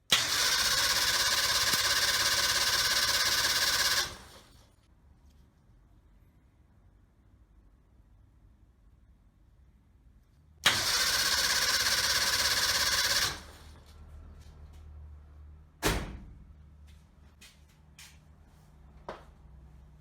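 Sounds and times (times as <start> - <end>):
engine cranking: 0.1 - 4.6, 10.6 - 13.8.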